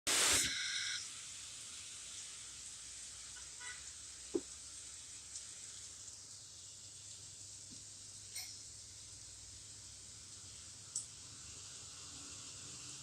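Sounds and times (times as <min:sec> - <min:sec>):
heavy rain hissing: 0:00.1 - 0:08.3, 0:08.9 - 0:13.0.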